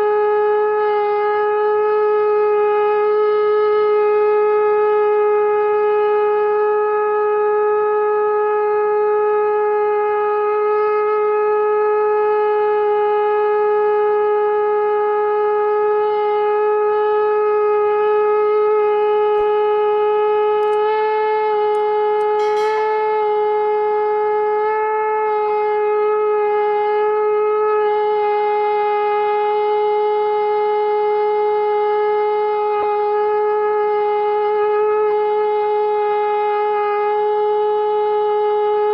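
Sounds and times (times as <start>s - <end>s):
conch shell blown: 0.0s - 38.9s
small clicks: 20.6s - 20.8s.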